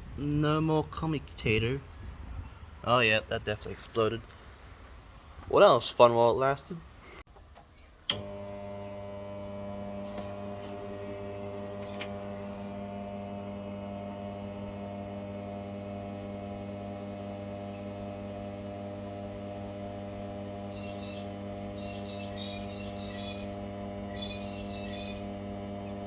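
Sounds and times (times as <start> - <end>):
electrical mains hum: 8.0 - 26.0.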